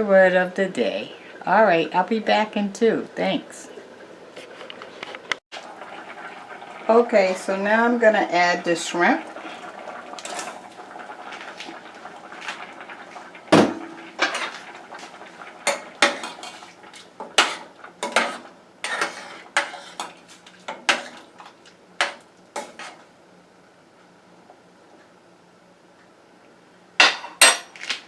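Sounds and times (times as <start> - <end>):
utensil clanking against pot: 15.6 - 23.0.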